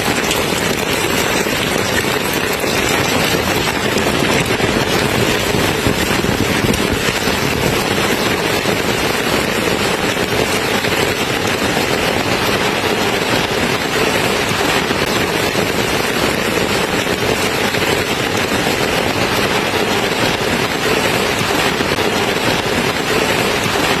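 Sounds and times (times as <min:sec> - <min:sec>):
steady rain hiss: 0:00.0 - 0:24.0.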